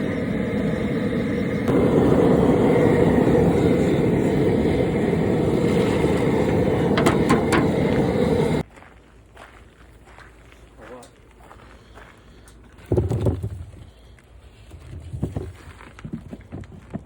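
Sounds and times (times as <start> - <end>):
gas burner roaring: 0.0 - 8.7.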